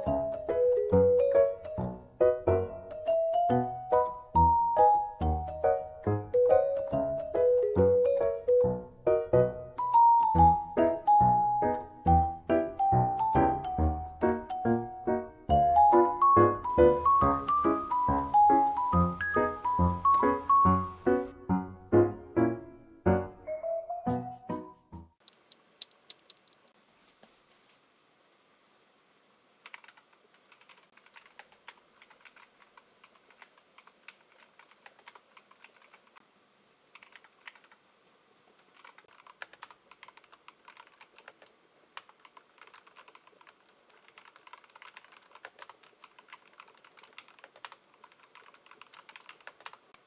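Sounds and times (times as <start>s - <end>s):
mechanical keyboard key clicks: 25.2s - 26.6s, 38.7s - 49.8s.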